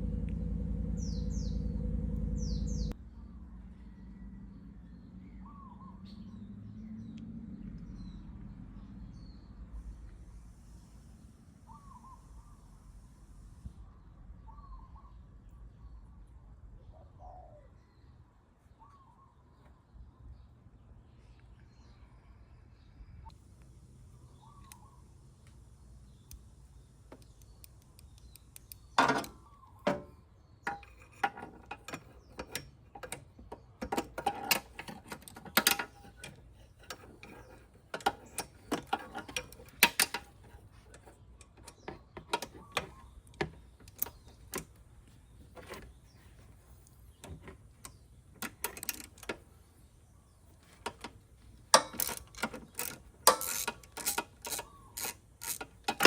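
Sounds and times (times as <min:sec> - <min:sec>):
metal tools knocking and clinking: 0:29.0 - 0:30.1, 0:30.7 - 0:44.6, 0:51.7 - 0:56.0
socket ratchet clicking: 0:51.8 - 0:56.0.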